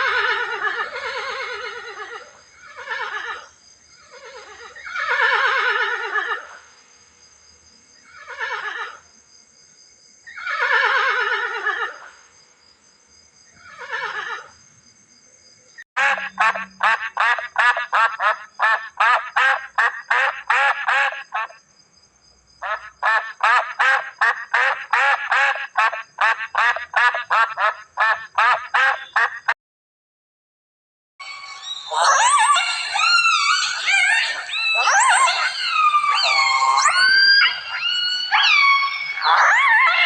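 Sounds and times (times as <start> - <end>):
horse whinnying: 10.3 - 12.0, 31.7 - 40.0.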